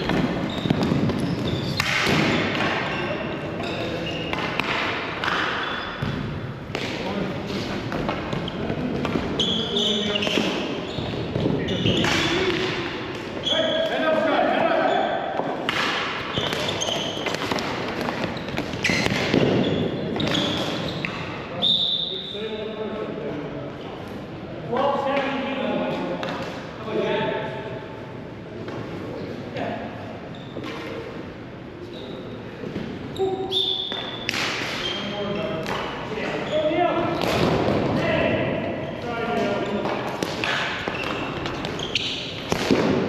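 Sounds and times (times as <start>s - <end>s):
shoes squeaking on court floor: 0.0s - 6.3s, 7.4s - 14.0s, 16.2s - 22.3s, 30.2s - 31.1s, 31.8s - 37.4s, 38.6s - 43.0s
ball and sticks thudding: 0.0s - 14.0s, 15.4s - 21.4s, 33.8s - 36.4s, 37.0s - 38.0s, 39.4s - 43.0s
sticks and ball clacking: 3.6s - 5.6s, 39.8s - 42.9s.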